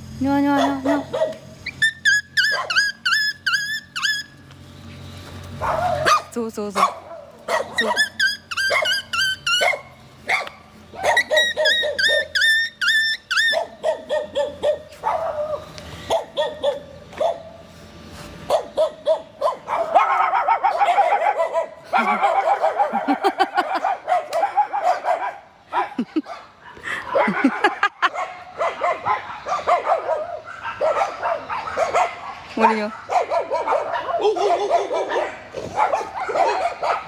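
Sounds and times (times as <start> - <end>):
dogs barking: 0.5 - 4.3, 5.6 - 17.6, 18.4 - 37.0
high yips: 0.6 - 4.4, 5.6 - 15.5.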